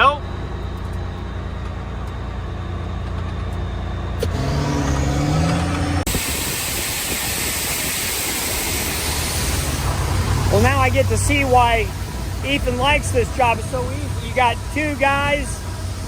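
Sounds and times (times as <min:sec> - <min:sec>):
truck engine accelerating: 0:00.0 - 0:16.0
steady dense noise: 0:05.6 - 0:16.0.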